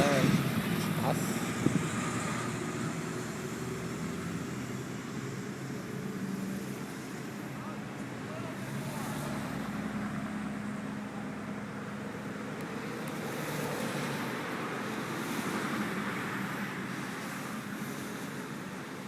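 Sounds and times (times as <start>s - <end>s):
wind noise on microphone: 0.0s - 2.8s.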